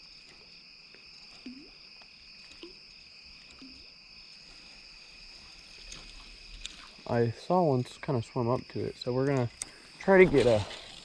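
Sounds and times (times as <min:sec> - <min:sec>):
crickets and insects trilling: 0:00.0 - 0:11.0.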